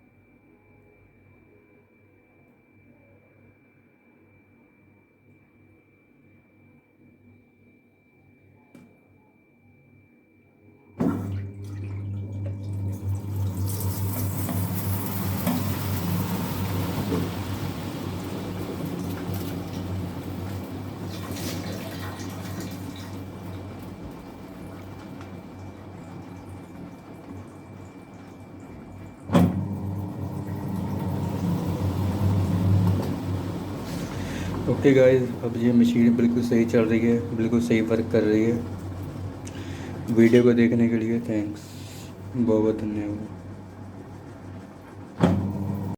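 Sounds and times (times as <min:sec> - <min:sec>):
water rushing into drum: 0:11.0 - 0:40.4
washing machine hum: 0:11.0 - 0:45.9
washing machine click: 0:29.3 - 0:40.8, 0:45.2 - 0:45.9.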